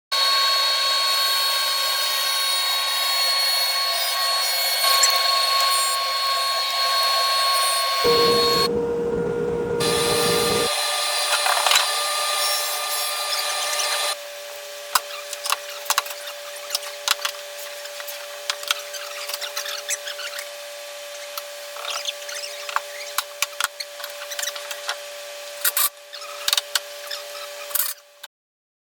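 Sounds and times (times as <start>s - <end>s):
power tool hum: 0.2s - 14.2s
power tool whine: 0.2s - 14.2s
wood cutting noise: 0.2s - 14.2s.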